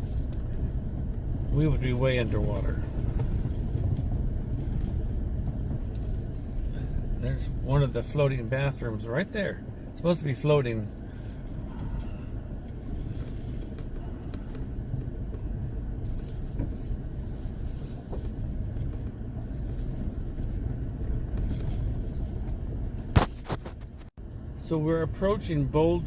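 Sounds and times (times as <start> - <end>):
truck engine and road noise: 0.0 - 26.0.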